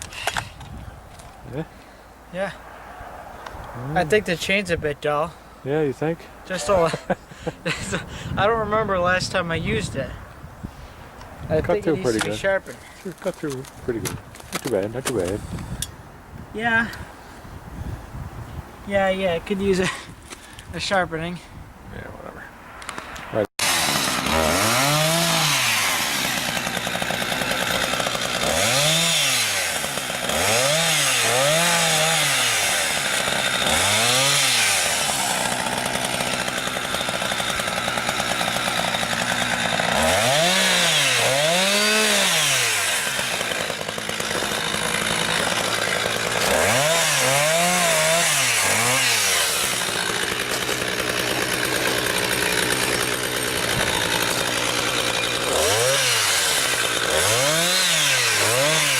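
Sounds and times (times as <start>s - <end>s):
chainsaw cutting wood: 0.0s - 0.8s, 11.8s - 12.5s, 22.8s - 58.9s.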